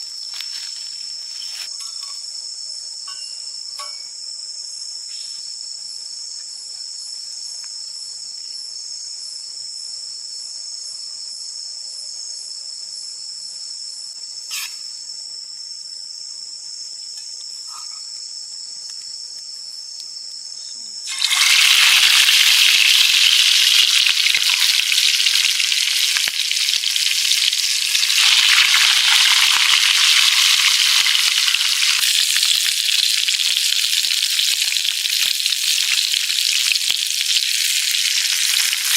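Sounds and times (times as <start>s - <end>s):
insects chirping: 0.0s - 38.9s
food frying in hot oil: 21.1s - 38.9s.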